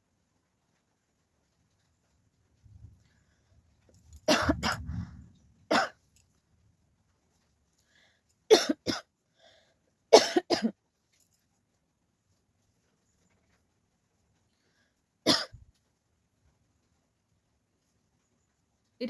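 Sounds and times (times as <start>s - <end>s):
person coughing: 4.3s - 5.0s, 8.5s - 9.0s, 10.2s - 10.7s, 15.3s - 15.6s.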